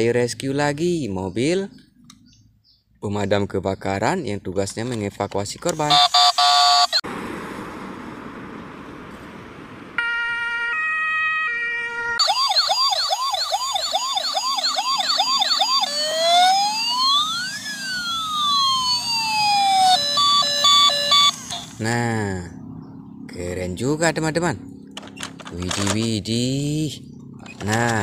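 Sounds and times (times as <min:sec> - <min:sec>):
toy fire truck siren: 0:05.9 - 0:07.0, 0:10.0 - 0:21.8.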